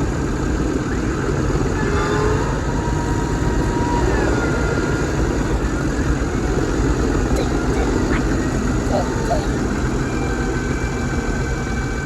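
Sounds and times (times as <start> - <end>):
tractor diesel engine rumble: 4.7 - 11.6.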